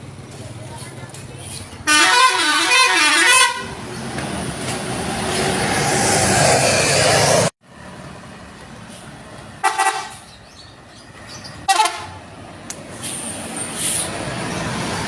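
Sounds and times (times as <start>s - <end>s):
bus horn toots: 1.8s - 3.8s, 9.6s - 10.2s, 11.7s - 12.2s
large vehicle rushing past: 3.8s - 9.3s.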